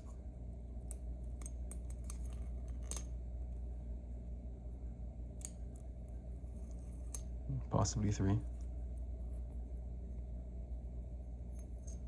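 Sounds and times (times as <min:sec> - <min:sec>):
steady low hum: 0:00.0 - 0:12.0
small metallic clicks and ticks: 0:00.8 - 0:03.2.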